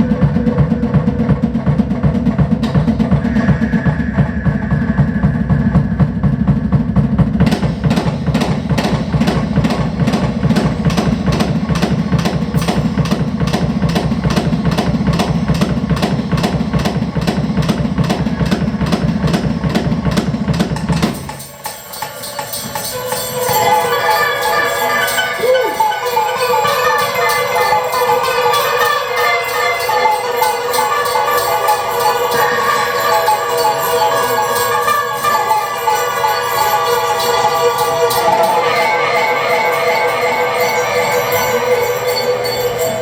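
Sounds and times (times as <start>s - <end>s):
rapid percussion strikes: 0.0s - 43.0s
low rumbling drone: 2.7s - 21.2s
ringing pitched tones: 7.4s - 43.0s.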